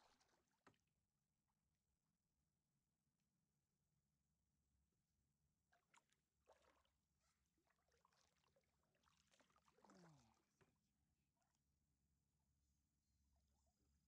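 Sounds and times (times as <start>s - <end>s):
paddle splashing in water: 0.0s - 0.9s, 5.7s - 11.5s
water trickling off paddle: 0.0s - 0.9s, 5.7s - 11.5s.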